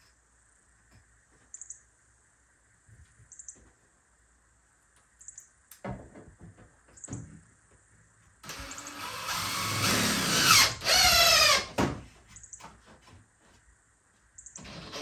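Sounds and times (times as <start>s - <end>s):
faint high chirp: 1.4s - 1.9s, 3.3s - 3.7s.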